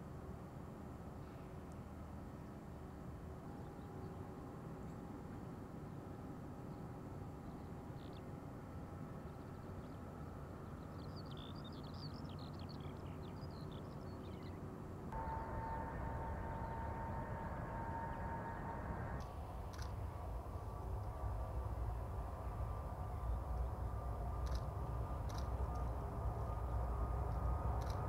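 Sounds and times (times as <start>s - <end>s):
engine whine: 15.1s - 28.0s
jet engines rumbling: 15.2s - 28.0s.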